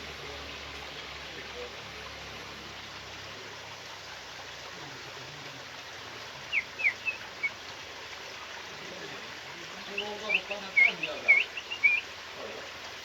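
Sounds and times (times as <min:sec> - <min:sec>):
bird sharp call notes: 0:06.5 - 0:07.6, 0:09.9 - 0:12.1.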